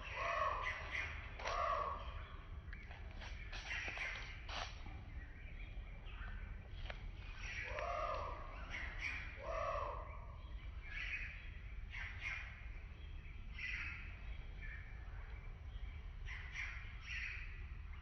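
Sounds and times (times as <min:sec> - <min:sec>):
loud arched bird calls: 0:00.0 - 0:04.8, 0:07.4 - 0:12.8.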